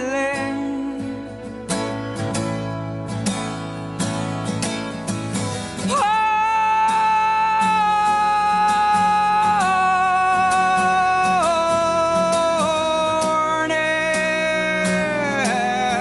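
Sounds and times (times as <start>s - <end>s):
acoustic guitar strumming: 0.0s - 16.0s
man singing long high note: 5.9s - 16.0s.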